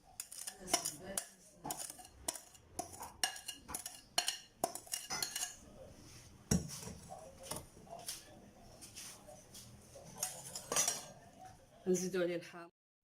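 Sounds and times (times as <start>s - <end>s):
utensils clinking against a bowl: 0.0s - 5.7s, 10.1s - 11.2s.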